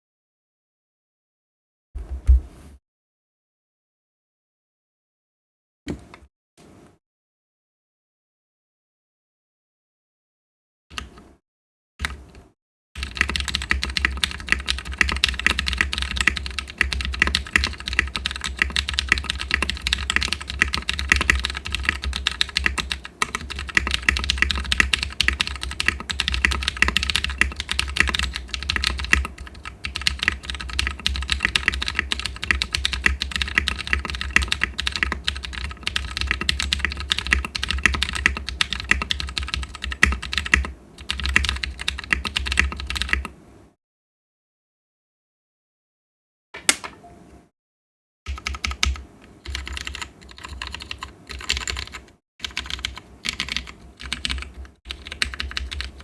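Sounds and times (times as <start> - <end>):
mechanical keyboard typing: 13.0 - 43.3, 48.3 - 56.0.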